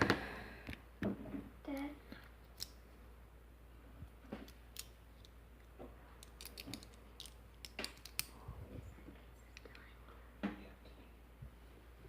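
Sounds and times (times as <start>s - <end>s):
tool clicking and scraping on lock: 6.2s - 8.4s.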